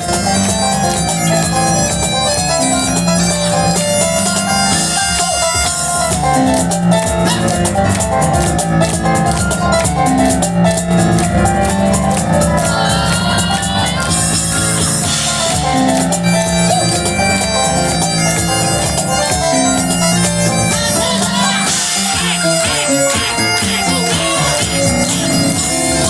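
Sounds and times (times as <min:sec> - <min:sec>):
bagpipes: 0:00.0 - 0:06.0, 0:12.7 - 0:26.0
cajon drumming: 0:00.0 - 0:26.0
piano: 0:00.0 - 0:26.0.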